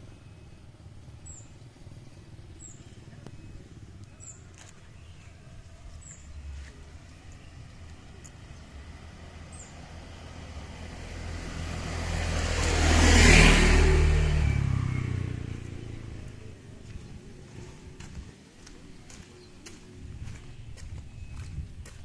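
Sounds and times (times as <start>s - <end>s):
car driving past: 8.5s - 18.2s.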